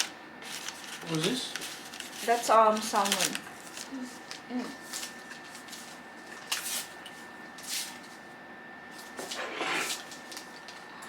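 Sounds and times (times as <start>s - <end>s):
tableware rustling and scraping: 9.0s - 10.2s.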